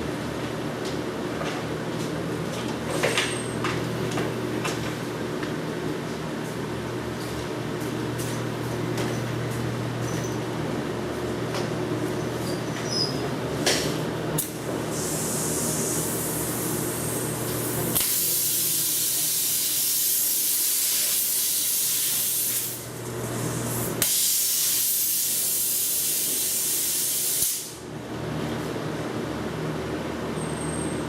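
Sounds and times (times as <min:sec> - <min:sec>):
compressed air hissing: 0:14.4 - 0:22.8, 0:23.6 - 0:27.8.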